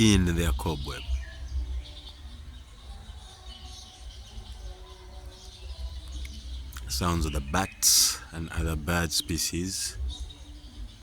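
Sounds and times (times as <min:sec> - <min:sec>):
faint high-pitched chirping: 0:00.0 - 0:11.0.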